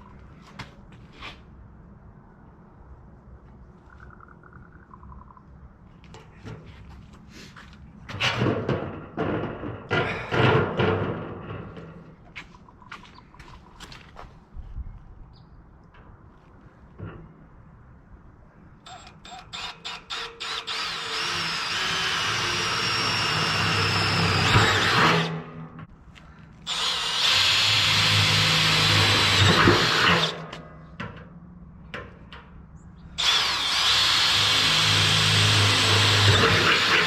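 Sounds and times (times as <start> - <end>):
power drill running: 18.9 - 25.4, 26.7 - 30.4, 33.2 - 37.0.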